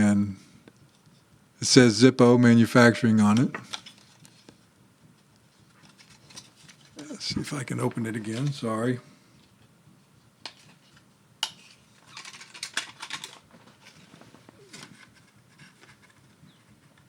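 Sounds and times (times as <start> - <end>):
packaging rustling: 5.5 - 7.2, 10.5 - 17.0.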